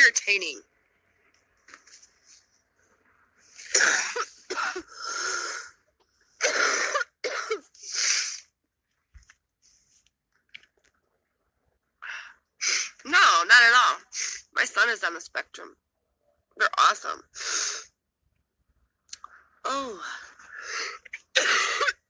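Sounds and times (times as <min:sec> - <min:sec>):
woman coughing: 0:03.6 - 0:05.0, 0:06.4 - 0:07.7, 0:21.3 - 0:22.0.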